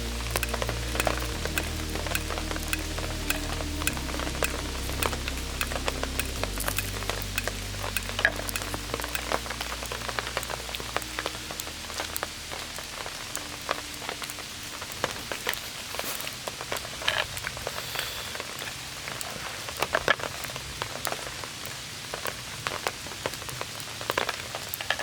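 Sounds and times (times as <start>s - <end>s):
low background music: 0.0s - 16.0s
campfire crackling and popping: 0.0s - 25.0s.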